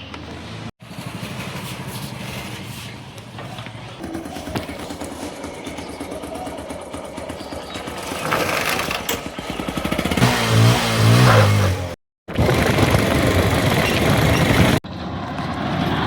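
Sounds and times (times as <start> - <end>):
tractor engine revving: 0.8 - 16.0.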